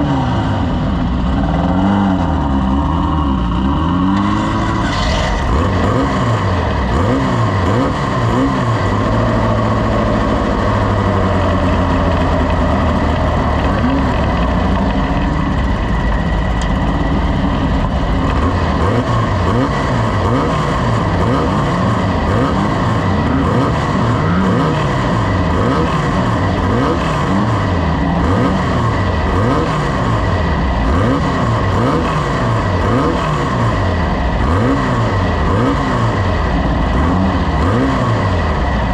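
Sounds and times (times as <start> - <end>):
race vehicle engine revving: 0.0 - 38.9
steady roar: 0.0 - 38.9.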